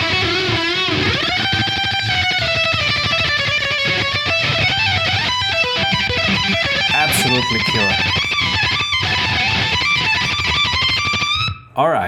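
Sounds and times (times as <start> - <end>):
distorted electric guitar solo: 6.4 - 8.3.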